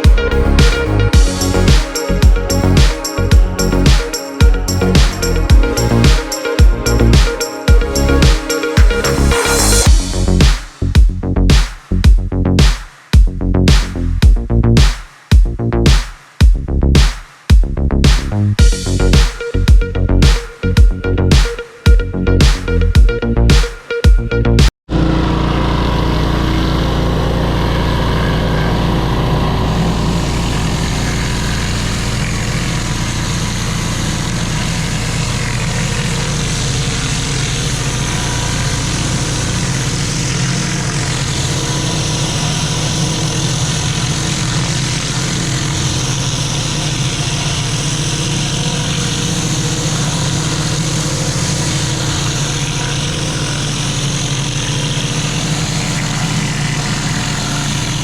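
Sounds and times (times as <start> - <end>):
pressure washer engine running: 0.0 - 11.6, 24.9 - 58.0.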